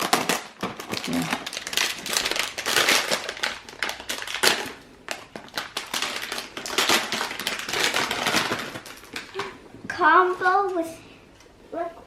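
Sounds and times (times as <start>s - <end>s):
plastic packaging rustling and tearing: 0.0s - 9.6s.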